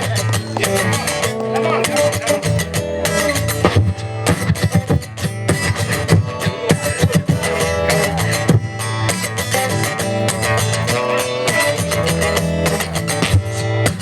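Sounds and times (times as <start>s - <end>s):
live band instrumental music: 0.0s - 14.0s.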